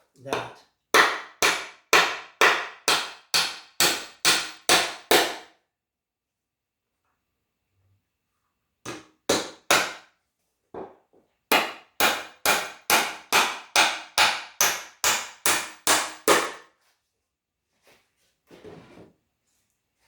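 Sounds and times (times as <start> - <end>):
hammer driving nails into wood: 1.0 - 5.5, 8.9 - 10.1, 11.5 - 16.7.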